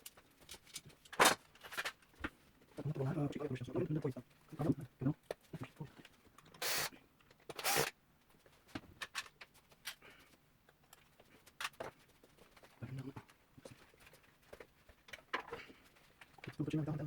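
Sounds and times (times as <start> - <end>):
clicks and knocks of small parts: 0.0 - 2.4, 8.7 - 16.6.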